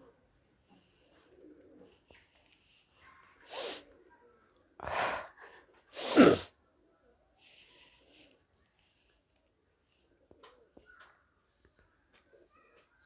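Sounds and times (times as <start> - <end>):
woman's breathy vocal bursts: 3.5 - 3.8, 6.0 - 6.5.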